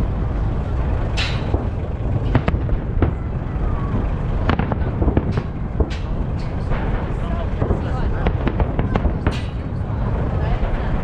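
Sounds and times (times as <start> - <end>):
low rumble: 0.0 - 11.0
fireworks bangs and cracks: 1.4 - 11.0.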